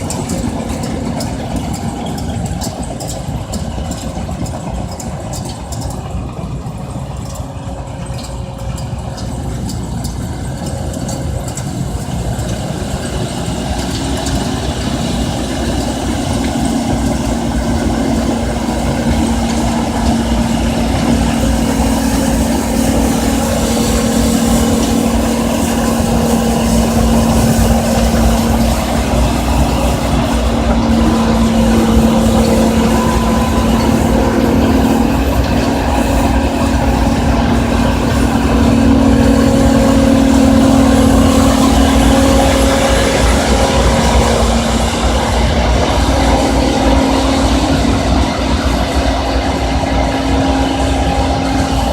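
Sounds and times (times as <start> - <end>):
combine harvester running: 0.0 - 51.9
steady hum: 14.2 - 51.9.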